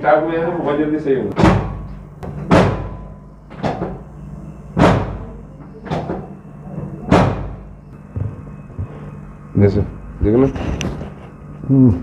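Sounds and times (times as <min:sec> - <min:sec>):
low steady hum: 0:00.0 - 0:12.0.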